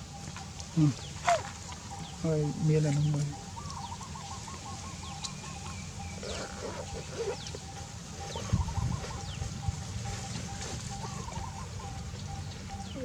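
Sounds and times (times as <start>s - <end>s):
bird wavering call: 0.0s - 13.0s
birds chirping: 0.0s - 13.0s
low bird calls: 0.0s - 13.0s.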